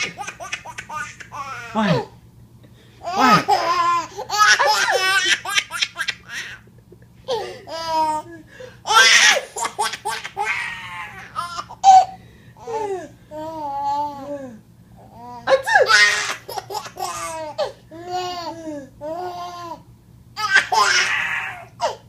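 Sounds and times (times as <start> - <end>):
baby laughing and squealing: 8.9 - 12.8, 15.6 - 18.5, 20.4 - 22.0.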